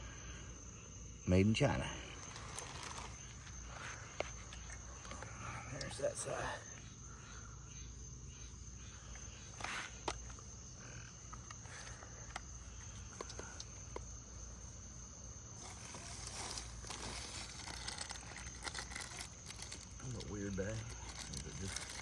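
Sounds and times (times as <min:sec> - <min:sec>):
parts and packaging handled: 0:02.2 - 0:05.9, 0:15.6 - 0:22.0.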